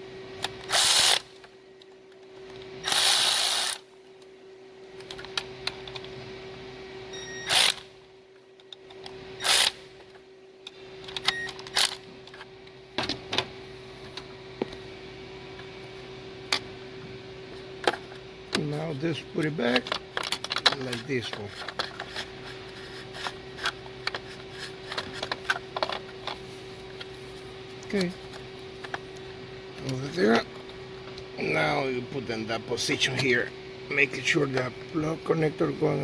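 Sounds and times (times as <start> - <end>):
faint steady hum: 0.0 - 36.0
cordless power tool bursts: 0.7 - 1.3, 2.8 - 3.8, 7.5 - 7.9.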